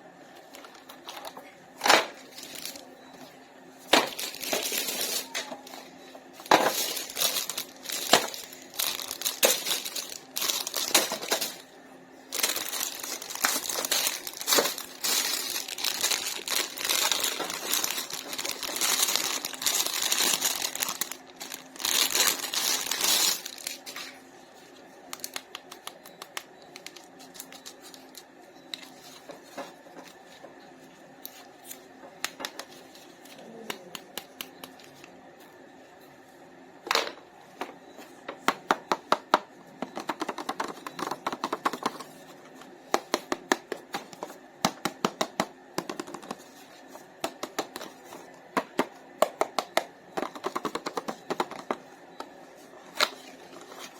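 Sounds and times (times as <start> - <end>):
plastic packaging crinkling: 2.2 - 2.9, 4.0 - 5.8, 6.4 - 11.7, 12.3 - 24.2, 25.2 - 29.2.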